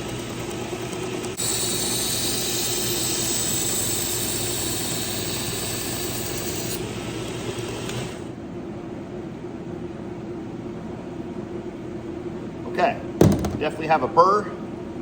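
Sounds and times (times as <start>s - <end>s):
belt sharpener motor hum: 0.0s - 8.3s.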